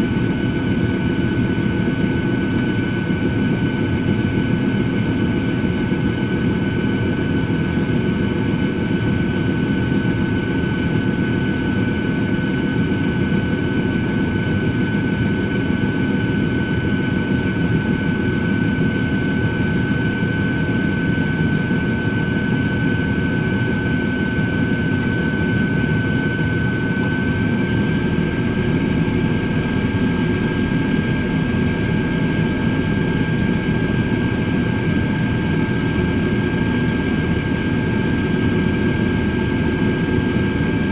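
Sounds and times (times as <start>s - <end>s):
air fryer fan rushing: 21.8s - 40.9s.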